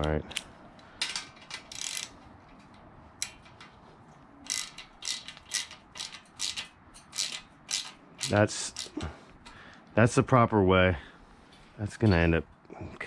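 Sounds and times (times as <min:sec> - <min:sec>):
ratchet wrench clicking: 0:01.1 - 0:03.6, 0:04.4 - 0:09.0.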